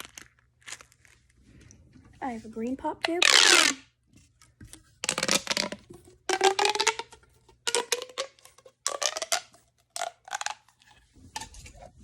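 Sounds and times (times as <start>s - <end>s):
pop tube toy zipping rasps: 3.0s - 3.9s, 5.0s - 7.1s, 7.7s - 10.6s.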